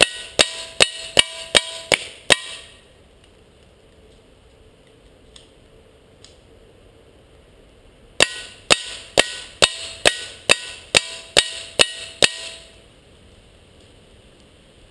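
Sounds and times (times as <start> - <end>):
steel target plate ringing: 0.0 - 2.9, 8.2 - 12.8.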